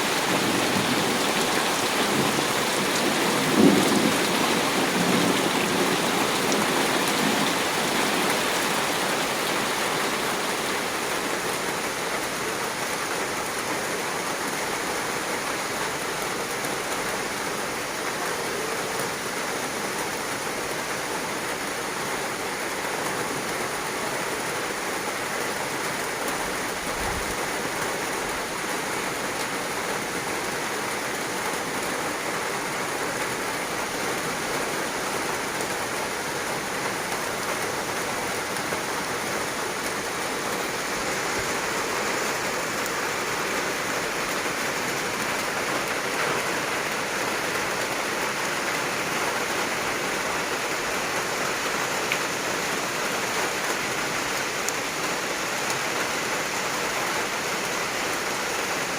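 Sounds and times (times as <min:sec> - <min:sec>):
thunder rumble: 0:00.0 - 0:12.0
heavy rain falling: 0:00.0 - 0:58.9.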